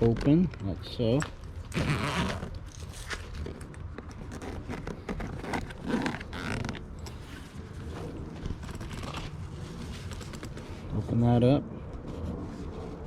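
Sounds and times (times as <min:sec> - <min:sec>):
fabric rustling and creaking: 0:00.0 - 0:11.2
zipper being opened: 0:01.6 - 0:07.3.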